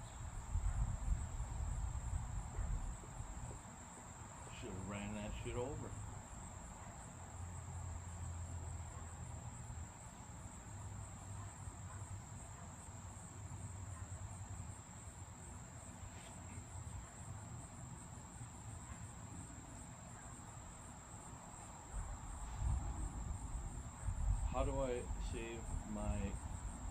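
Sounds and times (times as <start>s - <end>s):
crickets chirping: 0.0s - 26.9s.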